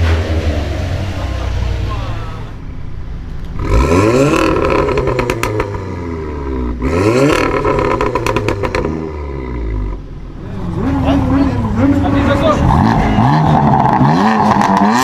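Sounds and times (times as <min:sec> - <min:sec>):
car engine revving: 0:00.0 - 0:15.0
exhaust crackling pops: 0:04.4 - 0:05.9.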